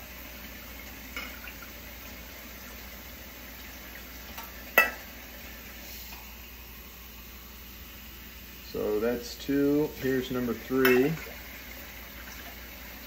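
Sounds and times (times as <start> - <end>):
steady hiss: 0.0 - 13.0
water pouring into pot: 0.0 - 13.0
glass clinking against pot: 10.8 - 11.2.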